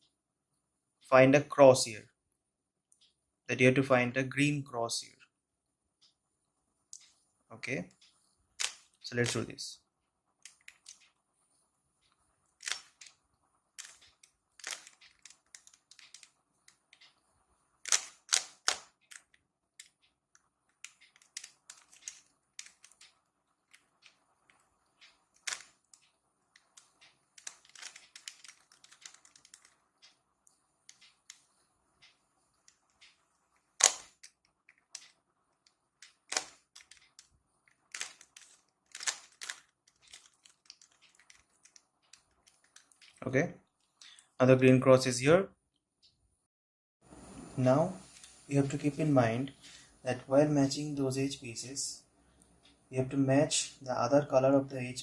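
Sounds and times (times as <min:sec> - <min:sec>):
puzzle cube plastic clicks: 0:08.6 - 0:09.5, 0:10.4 - 0:11.2, 0:12.1 - 0:43.4.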